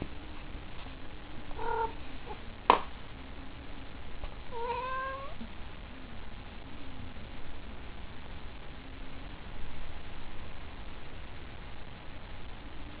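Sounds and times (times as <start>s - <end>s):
cat meowing: 1.6s - 2.0s, 4.5s - 5.4s.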